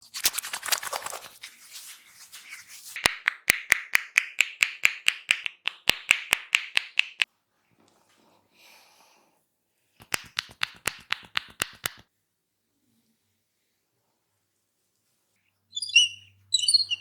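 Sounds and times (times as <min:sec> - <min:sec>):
hands rustling in hair: 0:00.1 - 0:04.6, 0:10.0 - 0:12.0
hands cracking on head: 0:00.2 - 0:01.8, 0:02.4 - 0:07.3, 0:10.0 - 0:12.1.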